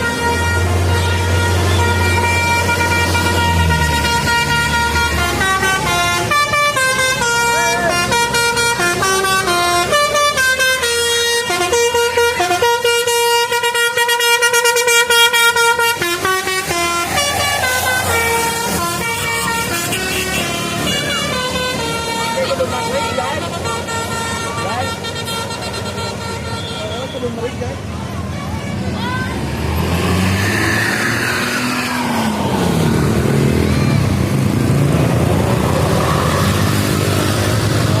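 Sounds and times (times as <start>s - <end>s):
bus engine passing: 0.0s - 26.5s, 27.5s - 38.0s
musical air horn melody: 0.0s - 27.2s
road traffic: 0.0s - 38.0s.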